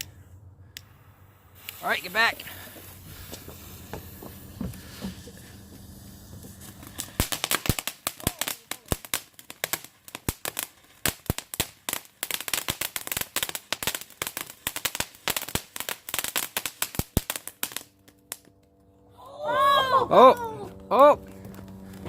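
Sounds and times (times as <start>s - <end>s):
firework cracks and pops: 1.6s - 18.8s.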